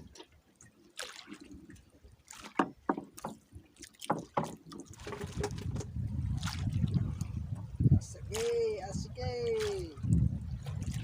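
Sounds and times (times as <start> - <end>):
sharp knocks on boat: 2.4 - 6.0.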